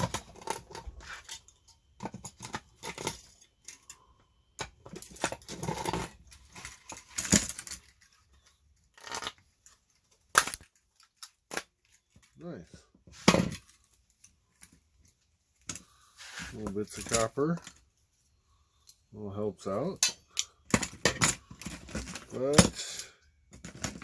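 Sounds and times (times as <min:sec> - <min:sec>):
clicks scrapes and rustles: 0:13.0 - 0:17.9.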